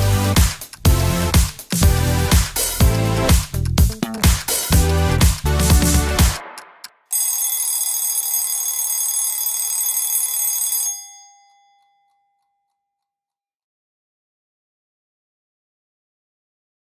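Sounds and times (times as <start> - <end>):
alarm clock bell ringing: 7.1 - 12.8.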